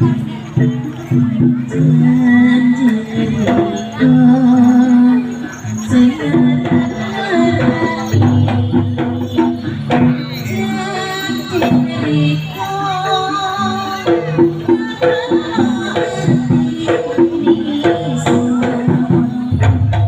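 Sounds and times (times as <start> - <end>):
drums: 0.0 - 20.0
metal percussion: 0.0 - 20.0
wavering melody line: 0.3 - 19.6.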